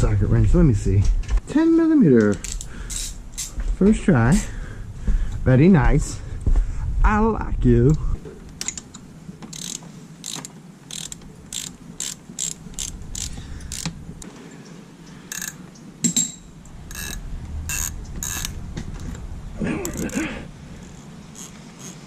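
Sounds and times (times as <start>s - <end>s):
ratchet wrench clicking: 2.4s - 3.2s, 9.5s - 14.0s, 15.3s - 15.6s, 16.9s - 18.6s, 20.8s - 22.0s.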